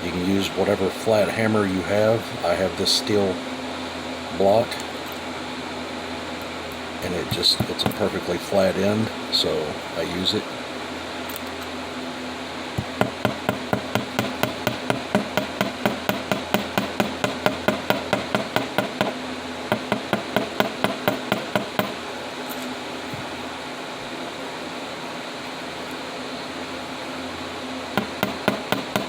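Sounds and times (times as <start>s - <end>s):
steel block tapping wire: 12.8s - 22.0s, 28.0s - 29.0s.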